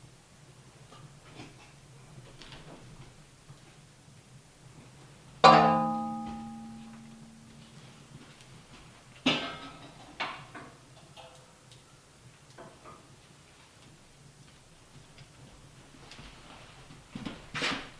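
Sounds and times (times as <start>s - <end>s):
ringing metallic strike: 5.4s - 7.9s.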